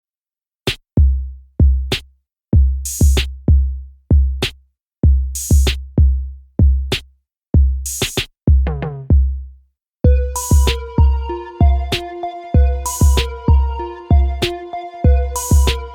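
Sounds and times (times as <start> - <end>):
deep booming kick drums: 2.6 - 4.4, 7.6 - 9.4
electronic melody: 10.1 - 15.9.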